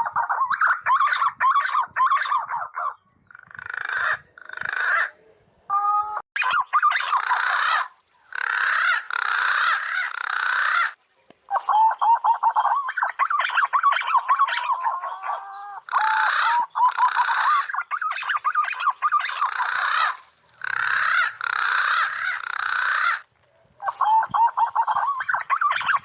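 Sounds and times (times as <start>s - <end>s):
birds calling: 6.4s - 26.0s.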